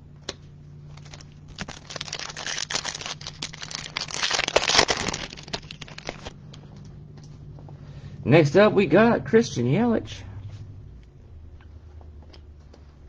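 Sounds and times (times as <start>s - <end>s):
foil wrapper tearing and crinkling: 0.9s - 6.3s.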